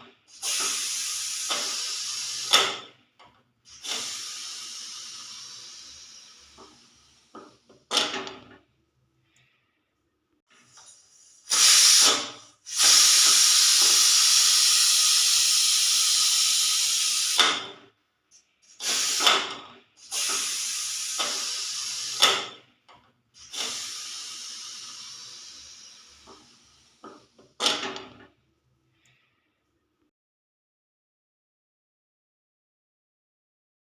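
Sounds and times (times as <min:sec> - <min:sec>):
pressure cooker whistle hissing: 0:00.3 - 0:02.8, 0:03.7 - 0:06.6, 0:11.2 - 0:17.7, 0:18.6 - 0:22.5, 0:23.4 - 0:26.3.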